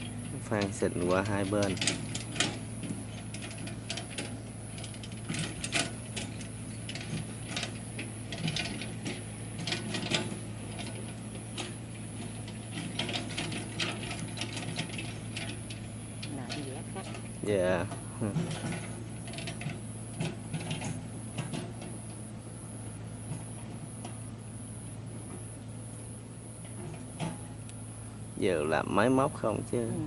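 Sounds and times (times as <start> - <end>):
engine hum: 0.0 - 30.0
clicking and clattering mud: 0.1 - 22.0.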